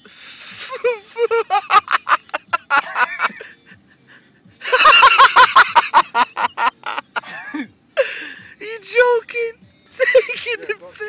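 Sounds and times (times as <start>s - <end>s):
people laughing: 0.6s - 3.7s, 4.6s - 7.6s.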